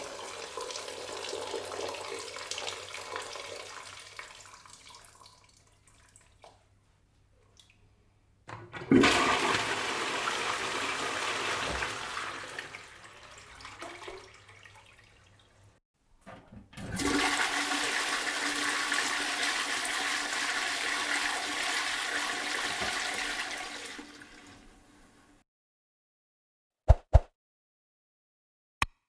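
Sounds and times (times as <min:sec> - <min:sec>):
toilet flushing: 0:00.0 - 0:05.7, 0:08.5 - 0:15.6, 0:16.7 - 0:25.4.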